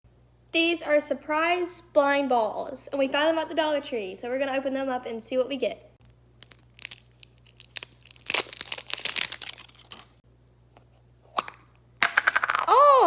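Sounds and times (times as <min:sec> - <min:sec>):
wrapper tearing and crinkling: 0:06.0 - 0:10.2.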